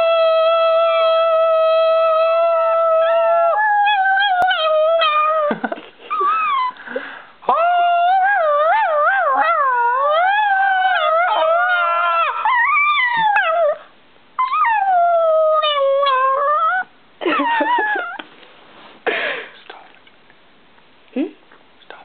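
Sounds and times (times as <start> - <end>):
dog howling and whining: 0.0 - 6.8, 7.5 - 18.2.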